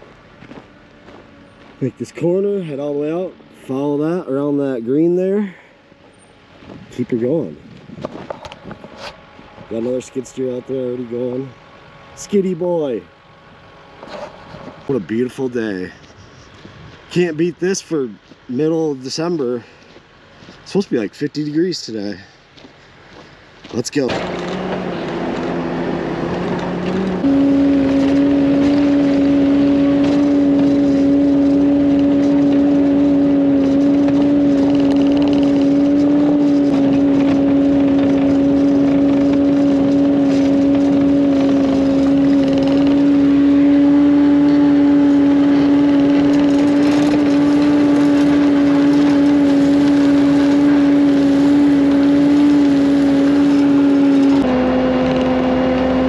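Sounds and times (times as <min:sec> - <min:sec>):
diesel engine at high throttle: 0:00.0 - 0:56.0.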